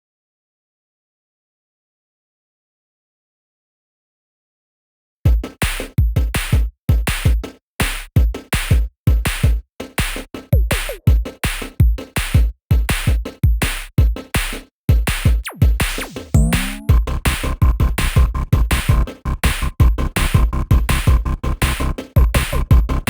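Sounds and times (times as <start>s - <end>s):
electronic beat-driven music: 5.3s - 23.0s.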